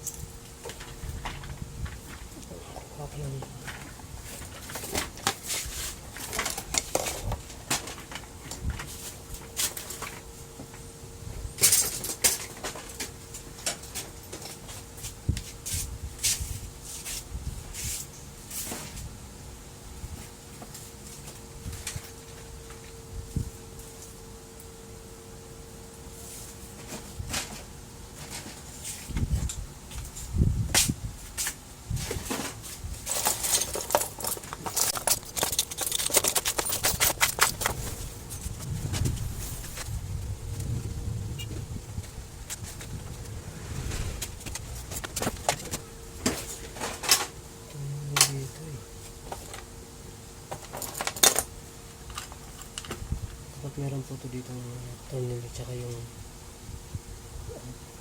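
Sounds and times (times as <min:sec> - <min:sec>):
faint steady hum: 0:00.0 - 0:58.0
printer parts clicking and scraping: 0:32.3 - 0:38.5.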